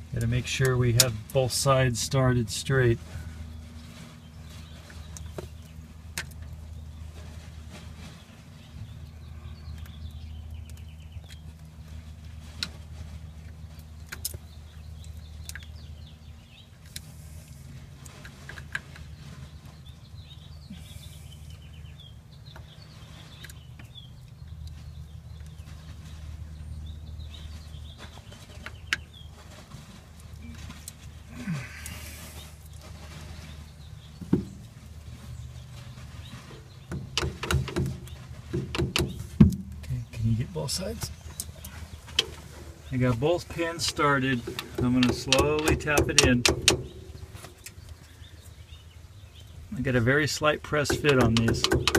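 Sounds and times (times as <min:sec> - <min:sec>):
light metal clicks and knocks: 0:36.9 - 0:39.9, 0:43.8 - 0:48.0, 0:50.8 - 0:51.9.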